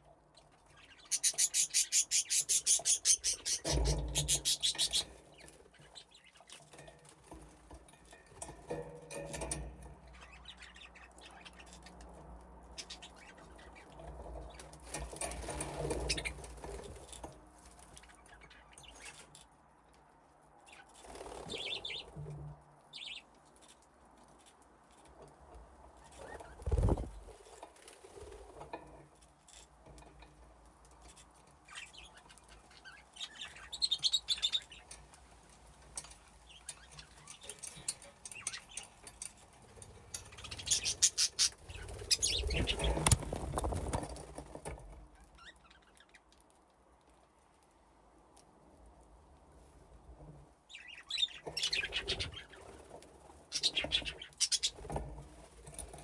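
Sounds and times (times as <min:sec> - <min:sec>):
bird chirps: 0:00.8 - 0:06.2, 0:31.7 - 0:34.9, 0:40.4 - 0:43.2, 0:50.8 - 0:52.6, 0:53.5 - 0:54.8
bird wings flapping: 0:26.4 - 0:27.4, 0:41.3 - 0:44.4.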